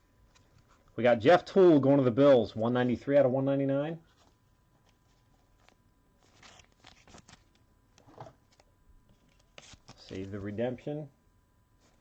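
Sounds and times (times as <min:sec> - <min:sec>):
trading cards rustling: 0:04.1 - 0:10.8.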